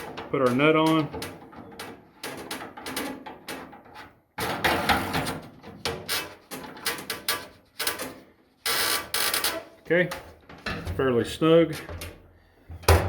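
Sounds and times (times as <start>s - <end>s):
nut tightening clicks and scrapes: 6.0s - 9.7s.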